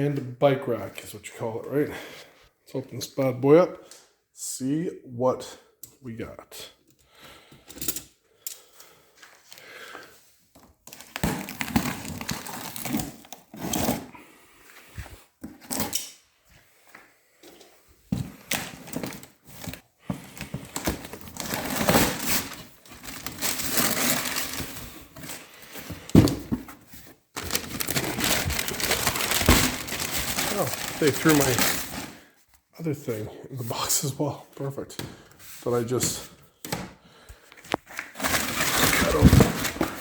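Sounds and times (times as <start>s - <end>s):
cardboard scraping and tearing: 10.9s - 14.1s, 20.7s - 25.4s, 27.4s - 32.1s, 38.1s - 40.0s.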